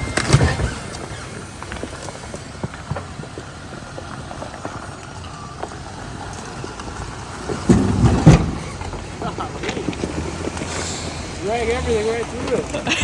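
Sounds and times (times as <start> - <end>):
off-road vehicle engine rumble: 0.0 - 13.0
heavy thuds and knocks: 7.4 - 10.6.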